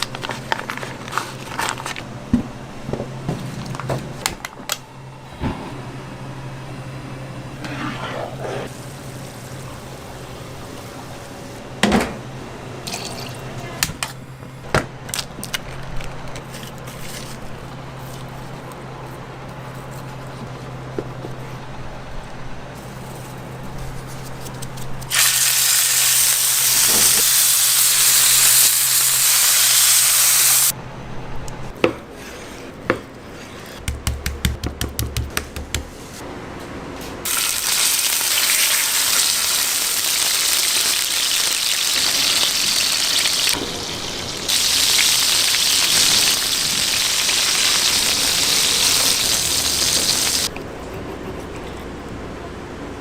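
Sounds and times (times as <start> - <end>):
steak sizzling in butter: 25.1 - 30.7, 37.3 - 43.6, 44.3 - 50.5.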